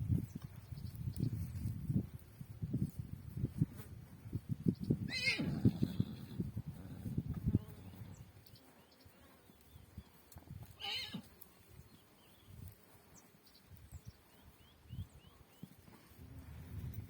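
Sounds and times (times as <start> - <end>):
horse whinny: 5.1 - 6.4, 10.8 - 11.3
hoof thuds: 6.5 - 17.0.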